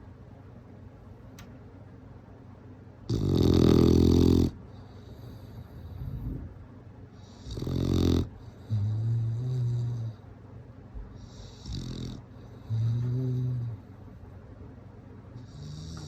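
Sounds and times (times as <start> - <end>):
dog snoring: 3.1 - 6.6, 7.2 - 10.2, 11.2 - 14.0, 15.4 - 16.0.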